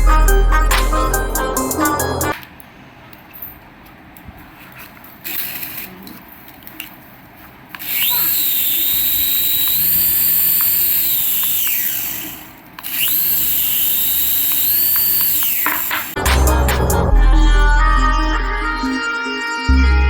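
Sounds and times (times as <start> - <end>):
toy electric motor whining: 7.8 - 16.2.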